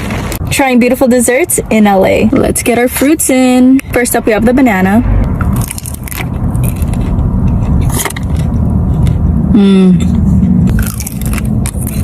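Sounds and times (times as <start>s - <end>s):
low rumble: 0.0s - 12.0s
person humming mmm: 9.5s - 10.2s.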